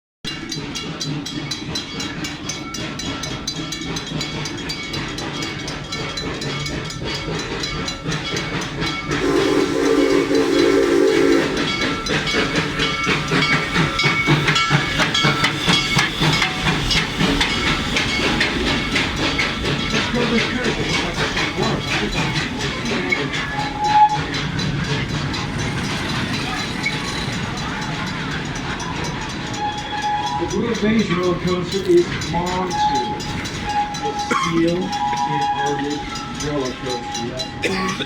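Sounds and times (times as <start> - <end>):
train wheels clicking on rails: 0.3 - 38.0
train whistle chord: 9.2 - 12.0.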